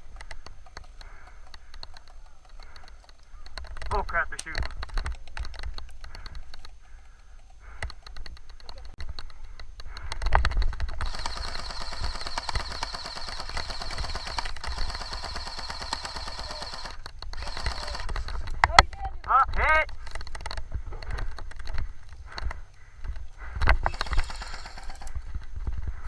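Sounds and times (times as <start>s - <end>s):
airsoft guns firing: 11.0s - 18.4s, 23.8s - 25.2s.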